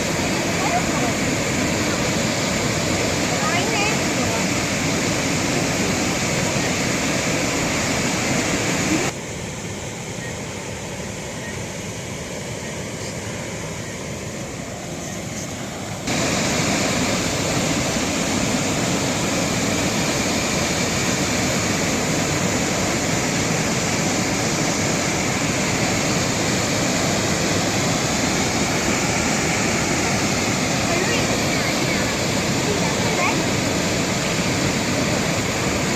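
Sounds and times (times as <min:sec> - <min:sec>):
waterfall rushing water: 0:00.0 - 0:35.9.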